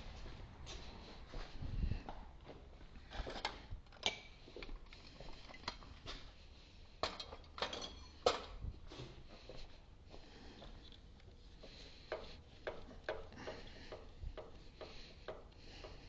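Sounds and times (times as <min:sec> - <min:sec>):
metal tools clinking: 0:07.0 - 0:08.6.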